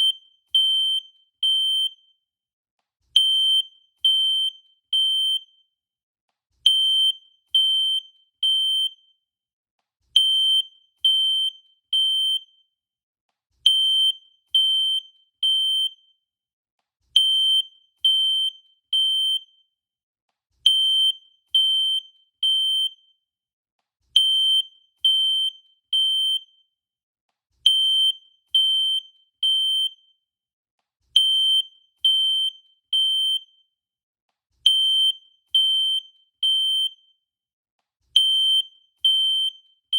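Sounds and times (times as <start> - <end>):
fire alarm beeping: 38.2 - 39.9.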